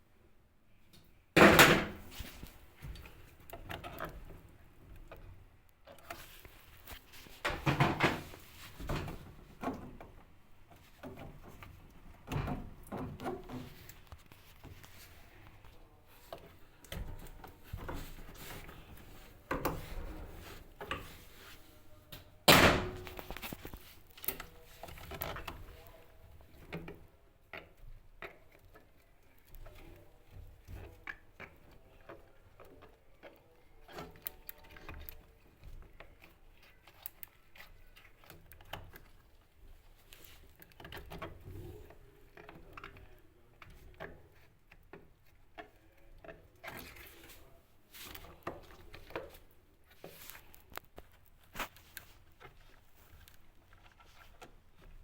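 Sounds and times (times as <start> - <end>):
knocks and clatter of handled panels: 1.4 - 4.4, 7.1 - 15.1.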